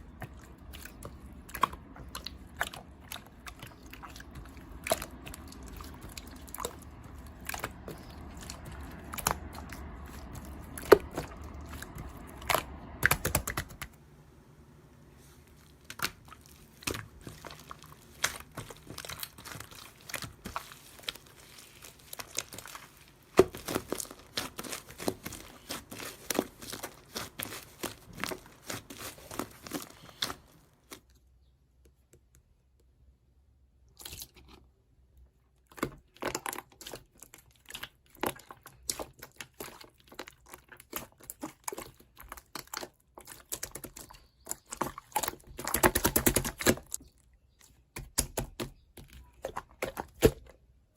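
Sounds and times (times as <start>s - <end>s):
slime crackling and popping: 15.6s - 31.0s.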